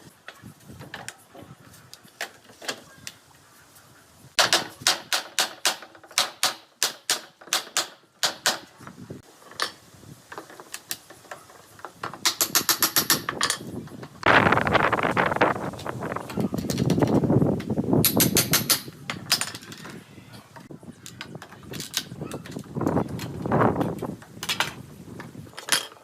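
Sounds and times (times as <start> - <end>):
hammering on wood: 4.4 - 8.7.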